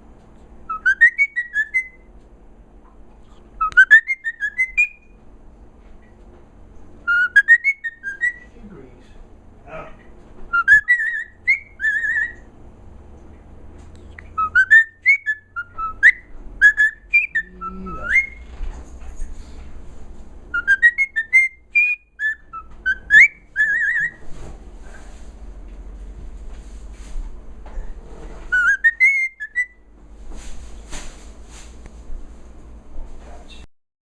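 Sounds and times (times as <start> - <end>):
bird whistling rising notes: 0.7 - 2.1, 3.3 - 5.2, 7.0 - 8.5, 10.5 - 12.5, 14.1 - 18.4, 20.5 - 24.2, 28.5 - 29.8.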